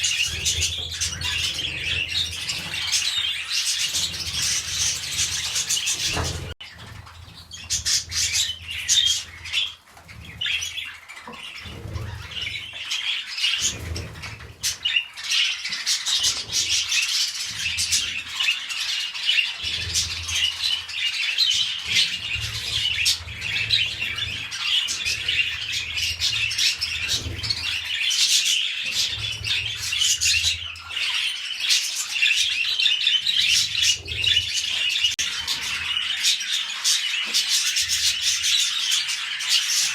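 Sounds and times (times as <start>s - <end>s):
budgerigars warbling and chirping: 0.0s - 39.9s.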